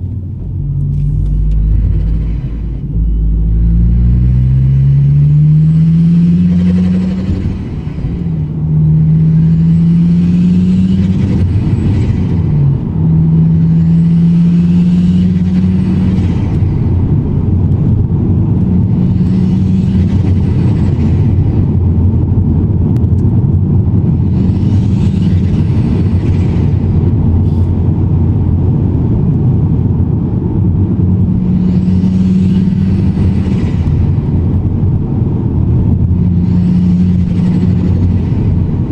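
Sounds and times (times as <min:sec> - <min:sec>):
car engine accelerating: 0:00.0 - 0:38.9
turbo flutter: 0:00.4 - 0:09.8.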